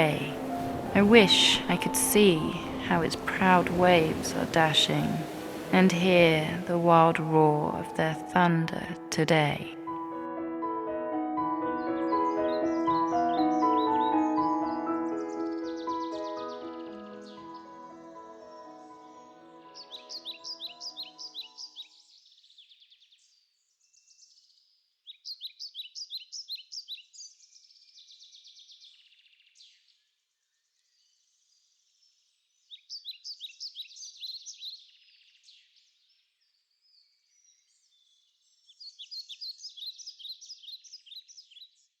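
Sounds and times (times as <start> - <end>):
bird chirping: 11.7 - 42.0.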